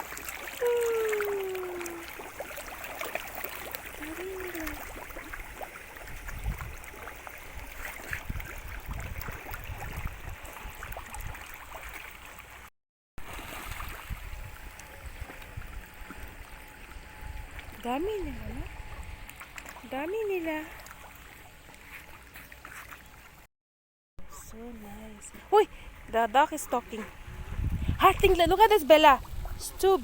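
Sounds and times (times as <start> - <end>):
water splashing from feeding fish: 0.0 - 17.0
voice saying ooh: 0.6 - 2.2, 4.0 - 4.9.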